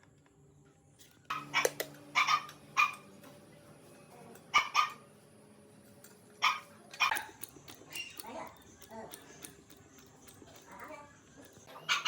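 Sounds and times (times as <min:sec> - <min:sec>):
dog barking: 0:01.3 - 0:03.0, 0:04.5 - 0:05.0, 0:06.4 - 0:07.3, 0:11.8 - 0:12.0.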